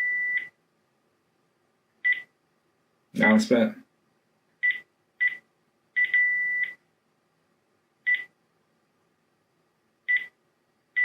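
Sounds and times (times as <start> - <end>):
longer steady phone tone: 0.0 - 0.5, 6.0 - 6.8
phone key-tone beeps: 6.0 - 6.8, 8.1 - 8.3, 10.1 - 10.3.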